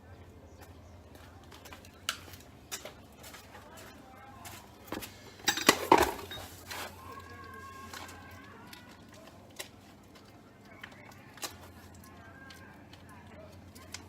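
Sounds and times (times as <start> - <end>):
metal clanks: 5.4 - 6.6
metal parts and tools clicking: 5.4 - 6.7.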